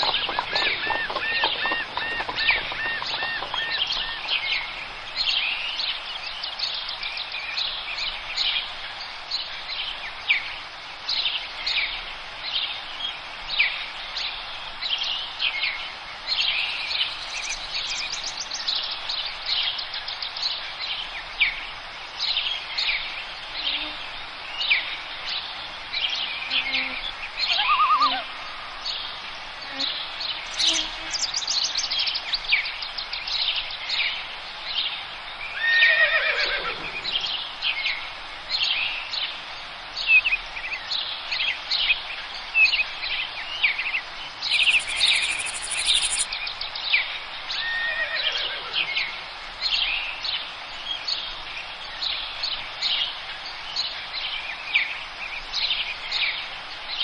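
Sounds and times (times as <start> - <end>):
songbirds chirping and trilling: 0.0 - 57.0
background hiss: 3.6 - 57.0
bird call sweeping down: 44.5 - 46.3.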